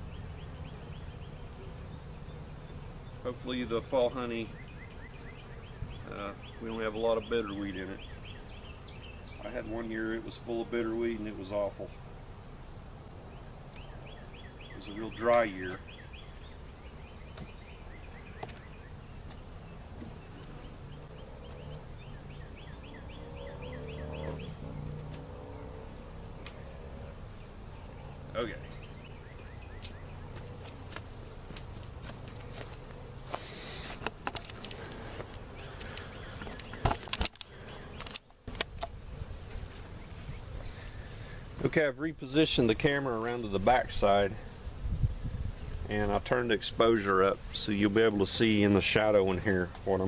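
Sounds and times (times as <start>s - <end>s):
honey bees humming: 0.0s - 50.0s
songbird singing: 0.0s - 50.0s
camera handling rustle: 33.3s - 39.0s.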